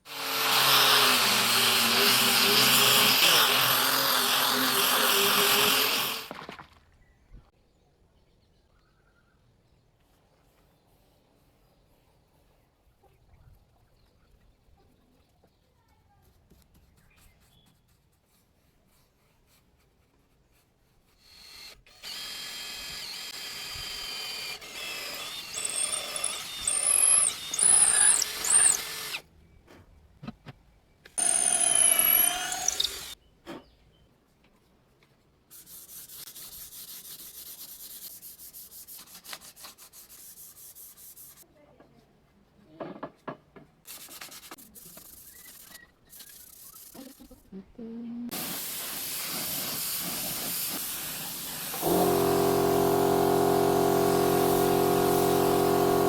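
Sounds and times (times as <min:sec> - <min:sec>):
power drill whining on wood: 0:00.1 - 0:06.3, 0:21.3 - 0:29.2, 0:31.2 - 0:33.2, 0:51.4 - 0:56.0
steady high rasping: 0:24.6 - 0:29.2, 0:31.2 - 0:33.2.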